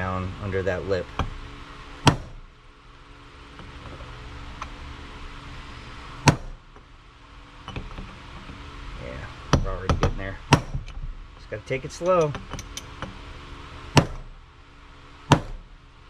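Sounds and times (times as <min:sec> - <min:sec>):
hammer striking steel: 0:14.0 - 0:14.3, 0:15.3 - 0:15.6.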